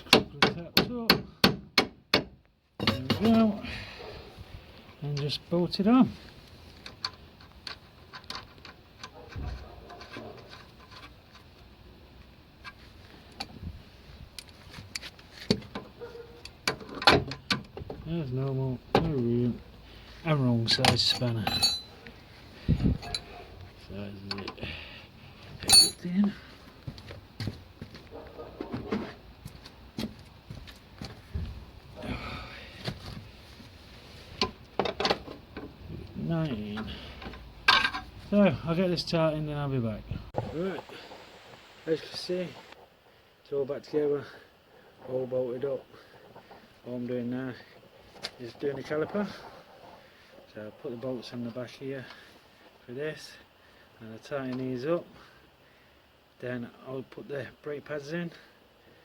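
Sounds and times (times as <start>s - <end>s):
spanner and bolts clinking on metal: 20.7s - 22.1s, 22.8s - 23.4s, 25.6s - 26.3s, 36.8s - 38.1s.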